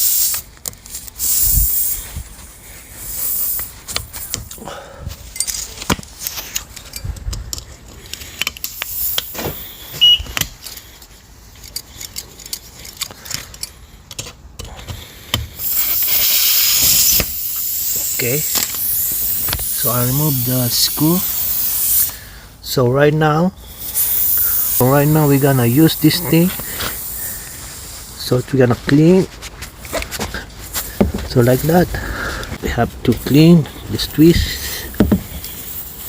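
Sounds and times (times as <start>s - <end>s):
hand tool clicking and scraping: 0.0s - 2.2s, 3.0s - 4.6s, 5.2s - 22.3s, 23.7s - 36.0s
hiss: 0.0s - 4.6s, 8.1s - 10.0s, 15.3s - 22.5s, 23.6s - 28.4s, 30.3s - 36.0s.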